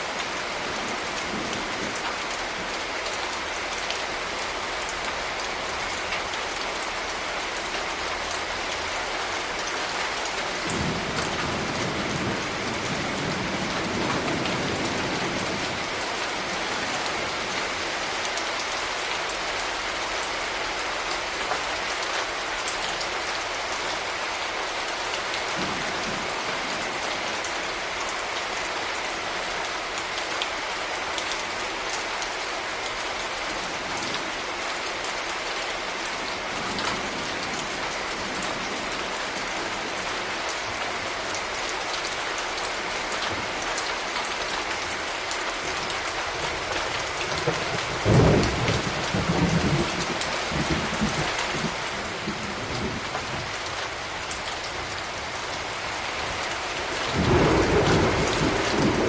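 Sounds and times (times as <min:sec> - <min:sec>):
steady rain falling: 0:00.0 - 0:59.0
thunder rumbling: 0:47.4 - 0:53.5, 0:57.1 - 0:59.0.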